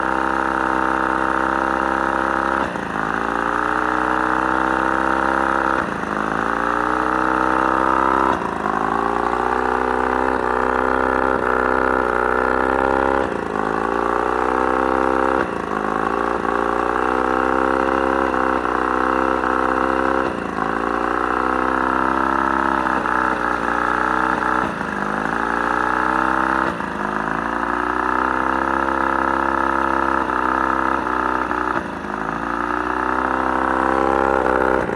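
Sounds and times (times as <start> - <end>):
outboard engine running and coughing: 0.0 - 4.5, 5.7 - 17.4, 18.2 - 21.8, 34.1 - 34.9.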